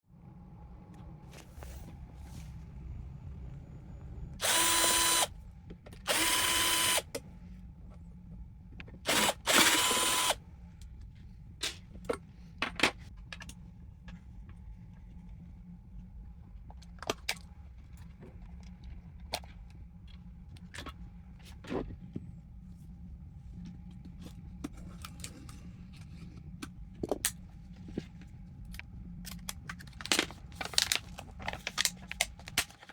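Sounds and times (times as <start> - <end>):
electric drill running: 4.4 - 5.3, 6.1 - 7.1, 9.1 - 10.4.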